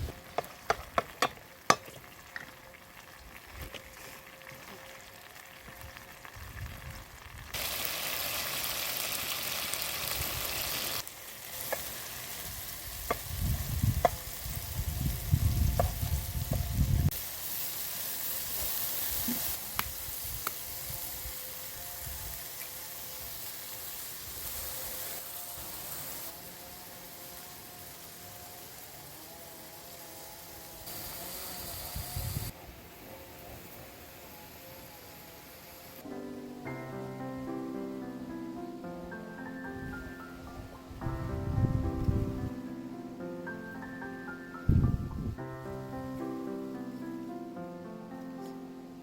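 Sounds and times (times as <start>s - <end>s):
omelette sizzling in a pan: 1.5s - 32.6s.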